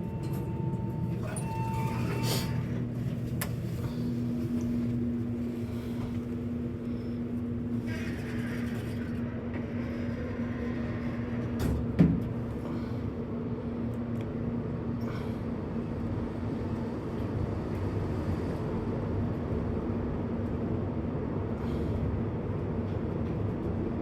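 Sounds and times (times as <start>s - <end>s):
elevator ride rumble: 0.0s - 24.0s.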